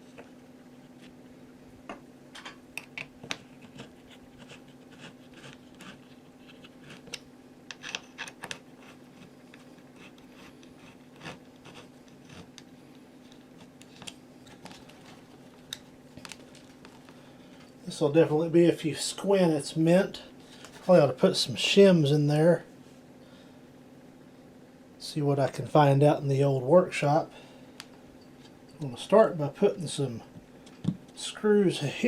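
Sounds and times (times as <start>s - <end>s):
low steady hum: 0.0s - 32.0s
screwdriver clicking and scratching: 3.3s - 12.6s.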